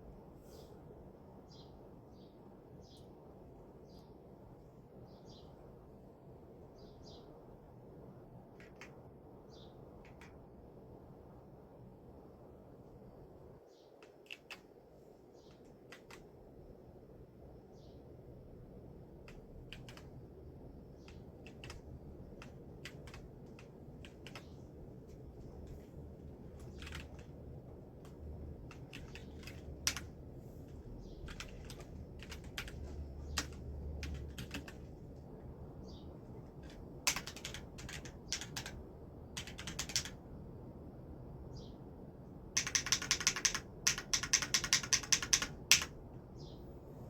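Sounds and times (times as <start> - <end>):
mechanical keyboard typing: 8.5 - 9.0, 10.0 - 10.4, 14.0 - 14.8, 15.4 - 16.4, 19.2 - 20.3, 20.9 - 35.2, 36.4 - 40.2, 42.5 - 46.0.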